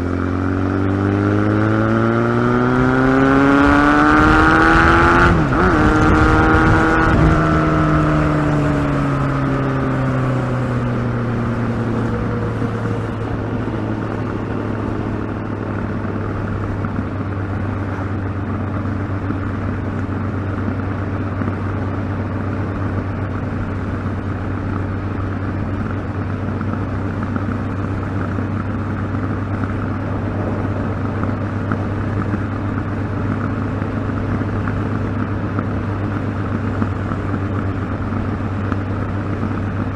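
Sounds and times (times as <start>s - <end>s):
motorcycle engine revving: 0.0s - 39.9s
rushing noise: 29.6s - 33.3s.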